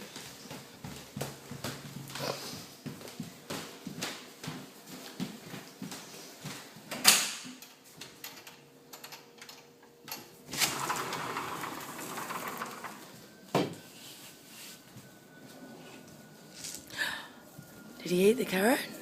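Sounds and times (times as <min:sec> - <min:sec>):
footsteps: 0:00.0 - 0:06.9
sliding door rolling open: 0:10.5 - 0:13.3.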